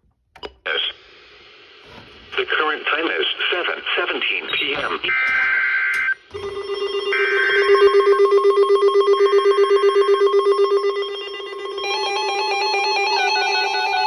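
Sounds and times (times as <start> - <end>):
data-tone bursts: 4.4 - 8.4.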